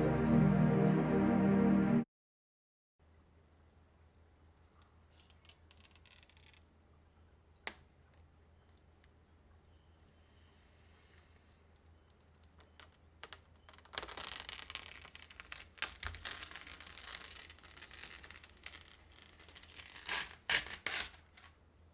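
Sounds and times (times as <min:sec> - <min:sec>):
rustling and scraping: 0:11.8 - 0:21.6.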